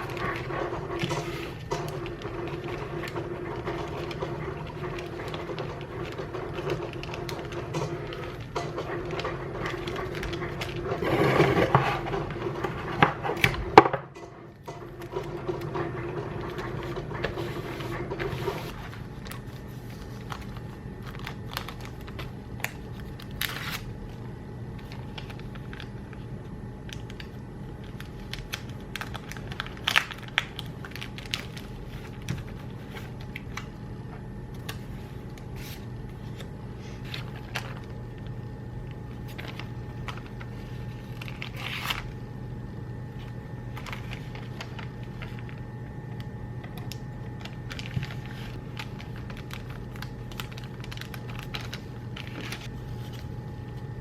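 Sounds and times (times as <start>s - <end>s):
plastic and paper rustling: 0.0s - 42.2s, 43.1s - 54.0s
steady low hum: 0.0s - 54.0s.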